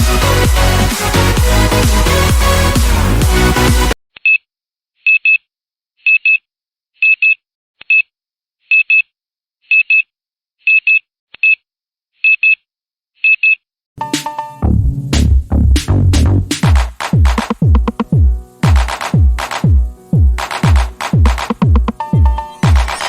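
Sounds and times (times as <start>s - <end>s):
electronic intro music: 0.0s - 4.0s, 14.0s - 23.0s
electronic music with drum machine: 0.0s - 4.0s, 14.0s - 23.0s
high electronic double beeps: 20.6s - 23.0s.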